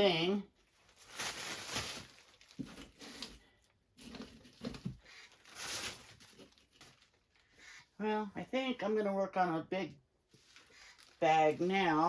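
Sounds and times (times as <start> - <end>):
bags rustling: 0.6 - 7.4.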